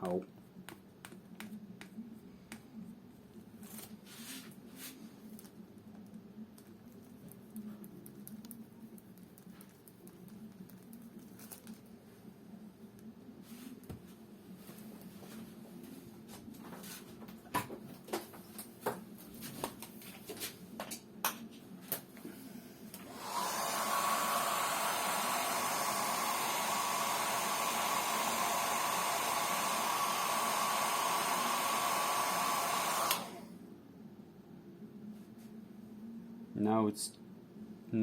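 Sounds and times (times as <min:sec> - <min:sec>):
hair dryer blowing: 0:23.0 - 0:33.6.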